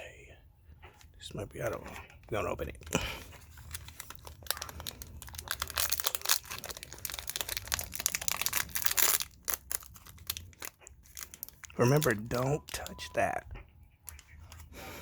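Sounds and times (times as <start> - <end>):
packaging crinkling: 2.0 - 13.4.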